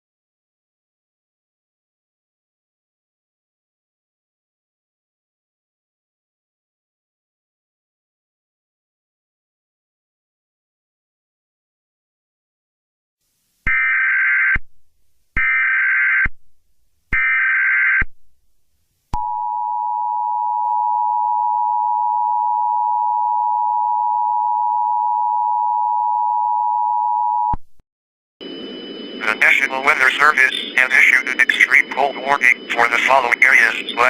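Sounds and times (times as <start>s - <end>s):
digital data tones: 29.2s - 34.0s.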